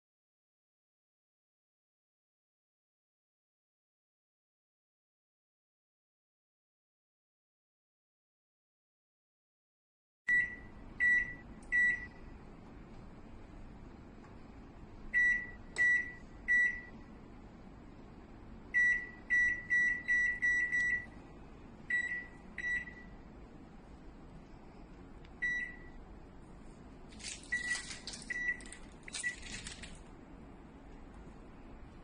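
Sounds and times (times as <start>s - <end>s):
microwave keypad beeps: 10.3s - 12.3s, 15.1s - 17.0s, 18.7s - 21.2s, 21.9s - 23.2s, 25.4s - 26.0s, 27.4s - 29.6s
rustling handling noise: 26.6s - 30.2s.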